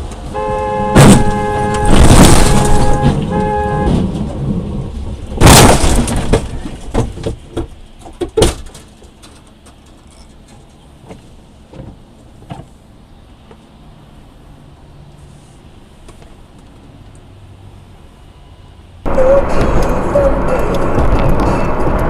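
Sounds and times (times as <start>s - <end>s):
low steady road noise: 0.0s - 22.0s
car horn honking: 0.3s - 4.1s, 19.1s - 20.7s
loud bang: 0.9s - 4.2s, 5.4s - 6.4s.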